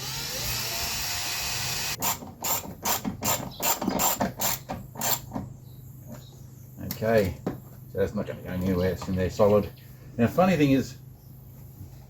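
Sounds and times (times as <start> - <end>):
cordless drill running: 0.0 - 2.6.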